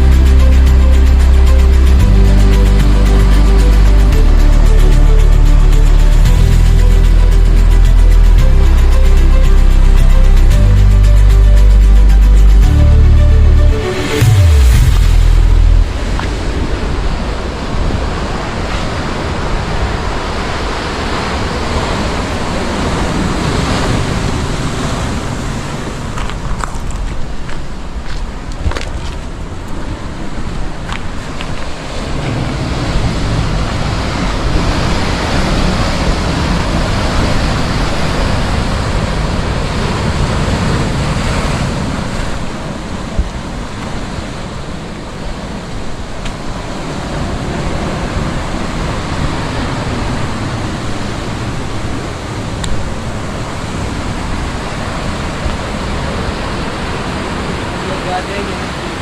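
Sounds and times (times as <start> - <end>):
ocean surf washing onto beach: 13.8 - 59.0.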